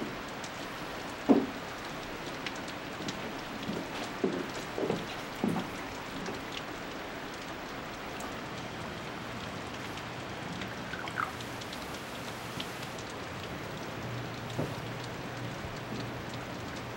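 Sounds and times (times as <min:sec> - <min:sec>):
water rushing: 0:00.0 - 0:16.9
faint ticks: 0:09.8 - 0:16.9.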